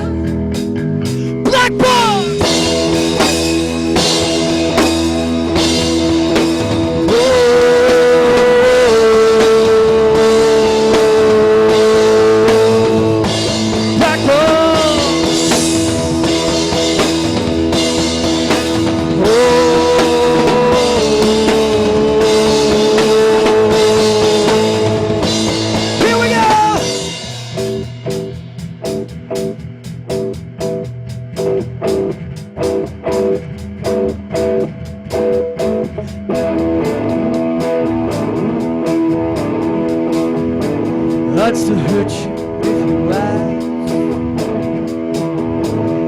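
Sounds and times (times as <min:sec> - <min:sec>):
rock band playing: 0:00.0 - 0:46.0.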